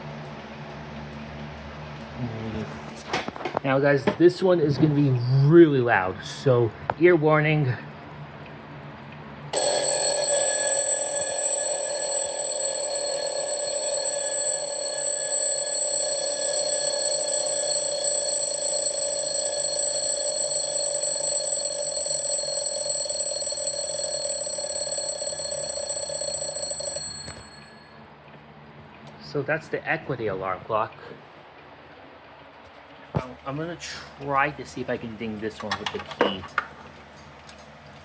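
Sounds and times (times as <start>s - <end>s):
alarm clock ringing: 9.6s - 27.9s.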